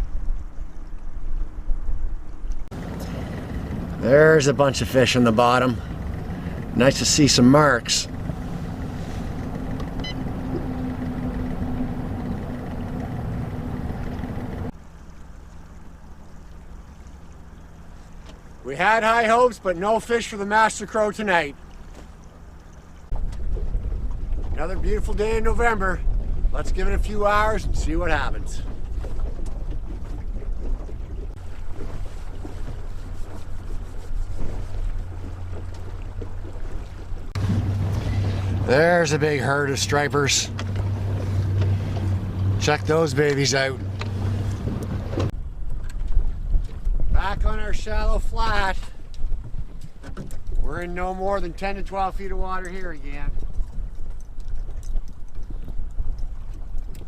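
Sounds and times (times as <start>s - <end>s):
water noise: 0.0s - 57.0s
wind: 0.0s - 57.0s
outboard motor running: 2.2s - 57.0s
faint high beep: 10.0s - 10.2s.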